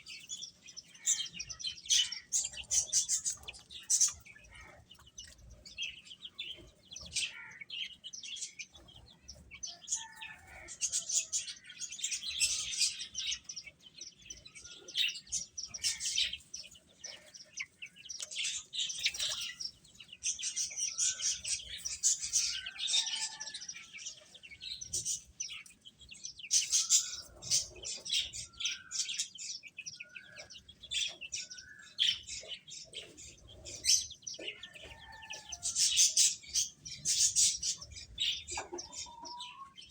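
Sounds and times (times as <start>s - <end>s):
chicks peeping: 0.0s - 39.9s.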